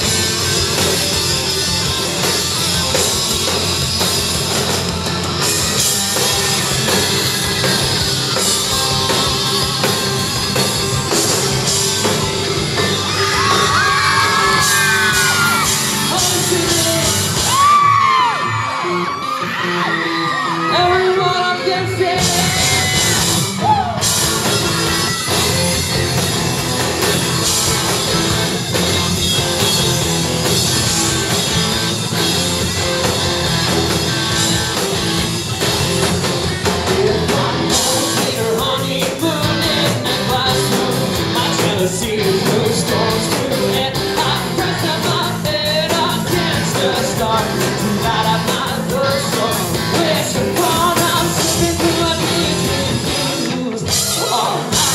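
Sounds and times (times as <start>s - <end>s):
rock band playing: 0.0s - 54.9s
person singing: 13.0s - 24.0s, 36.6s - 54.9s.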